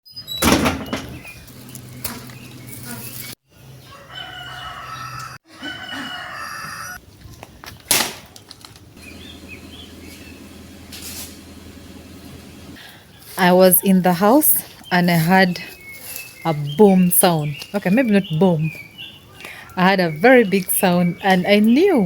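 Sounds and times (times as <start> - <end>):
rooster crowing: 3.7 - 7.0.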